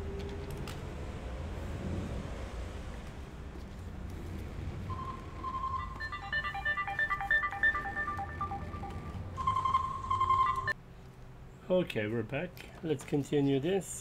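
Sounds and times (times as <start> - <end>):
held electronic tone: 4.9 - 10.8
phone ringtone beeping melody: 4.9 - 10.8.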